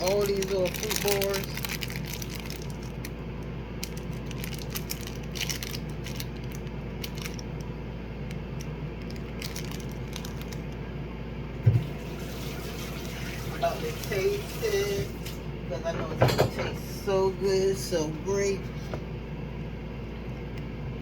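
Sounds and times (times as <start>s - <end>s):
wrapper crinkling and crunching: 0.0s - 10.8s
steady low hum: 0.0s - 21.0s.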